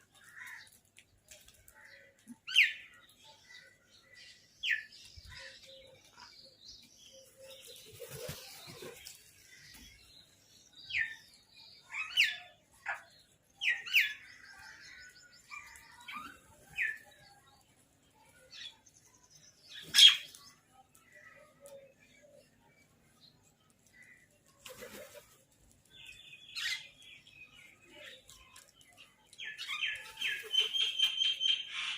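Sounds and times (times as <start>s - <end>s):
birds chirping: 0.0s - 31.9s
bird trill: 29.5s - 31.9s.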